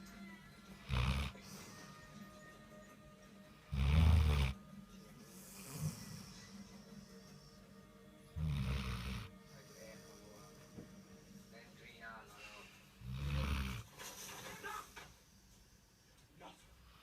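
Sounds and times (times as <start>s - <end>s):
dog snoring: 0.8s - 1.9s, 3.6s - 4.6s, 5.3s - 7.5s, 8.3s - 10.7s, 13.0s - 14.0s.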